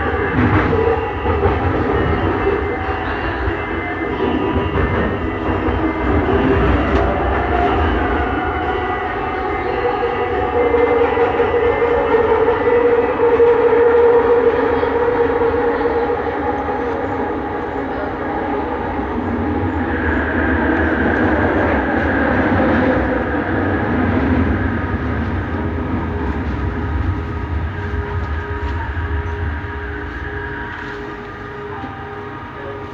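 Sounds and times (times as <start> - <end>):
train rumble: 0.0 - 32.9.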